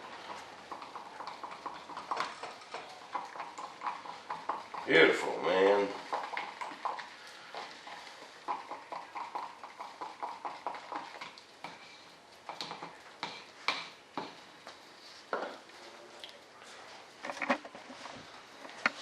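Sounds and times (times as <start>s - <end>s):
stir stick tapping mixing cup: 0.0s - 11.9s.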